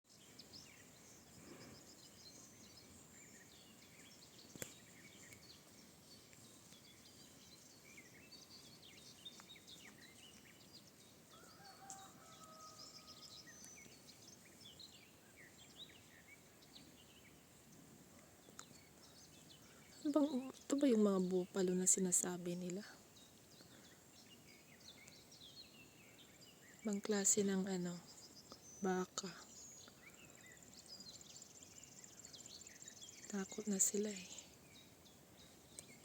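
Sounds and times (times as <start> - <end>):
small birds chirping: 0.0 - 36.0
low outdoor hiss: 0.1 - 36.0.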